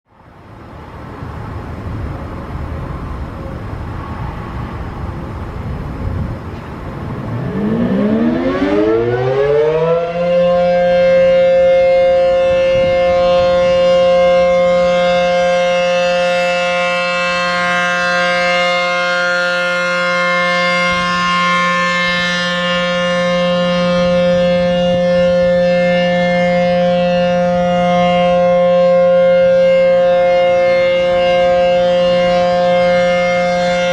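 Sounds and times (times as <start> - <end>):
road traffic noise: 0.1 - 33.9
warning siren winding up: 7.2 - 33.9.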